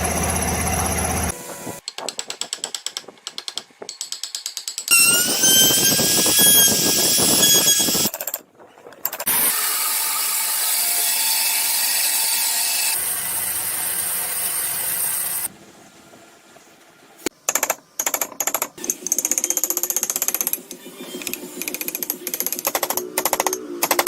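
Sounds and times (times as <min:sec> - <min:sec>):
power tool cutting wood: 0:04.9 - 0:08.1, 0:09.3 - 0:15.5
power tool whine: 0:09.3 - 0:15.5
rapid regular clicking: 0:17.5 - 0:24.0.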